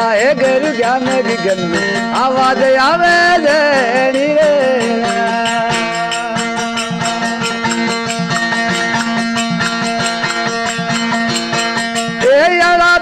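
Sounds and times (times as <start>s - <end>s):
person singing: 0.0s - 7.6s, 12.1s - 13.0s
veena strummed with drone: 0.0s - 13.0s.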